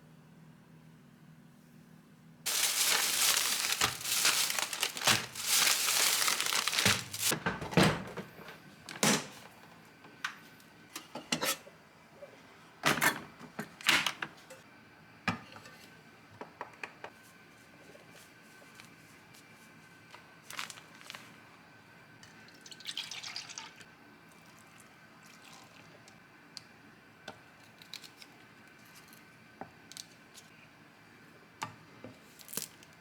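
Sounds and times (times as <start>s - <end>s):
rustling and crinkling handling: 2.5s - 7.4s, 18.0s - 21.4s.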